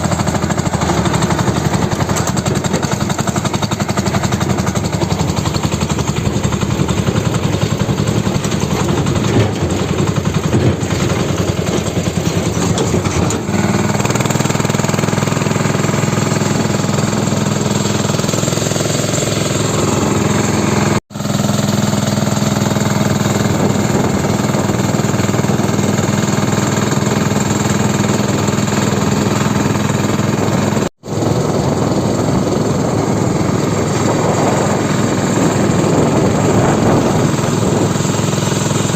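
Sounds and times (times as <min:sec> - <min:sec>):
farm machine engine thudding: 0:00.0 - 0:38.9.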